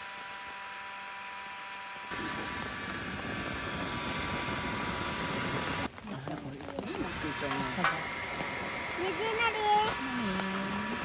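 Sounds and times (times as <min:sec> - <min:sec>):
gas torch roaring hiss: 0:02.0 - 0:05.9, 0:06.9 - 0:11.0.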